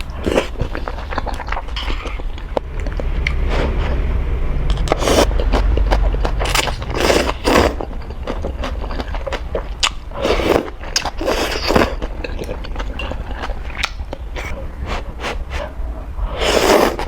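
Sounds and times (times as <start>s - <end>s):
chewing noodles: 0.0s - 3.8s, 4.7s - 15.7s, 16.3s - 17.0s
noisy bursts: 1.8s - 8.3s.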